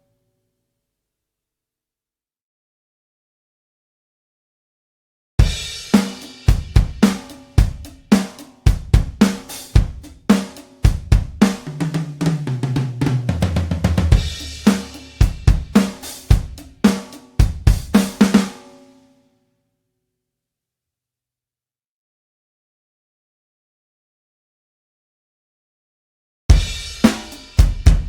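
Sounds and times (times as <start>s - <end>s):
tom fill: 5.4s - 18.7s
drum kit groove: 5.4s - 18.8s, 26.5s - 28.0s.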